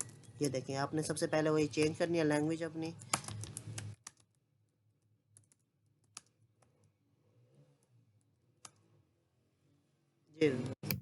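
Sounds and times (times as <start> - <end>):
computer keyboard clicks: 3.0 - 4.4, 5.3 - 6.8.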